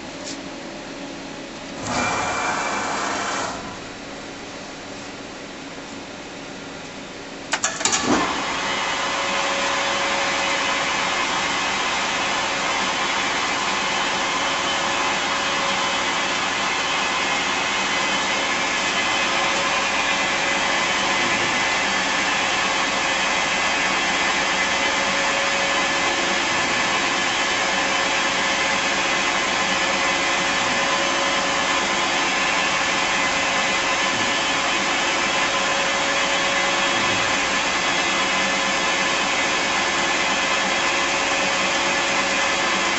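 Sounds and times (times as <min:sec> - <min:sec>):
lathe switching on clatter: 0:01.8 - 0:03.6, 0:07.5 - 0:08.8
lathe running with whine: 0:01.8 - 0:04.0, 0:08.0 - 0:42.9.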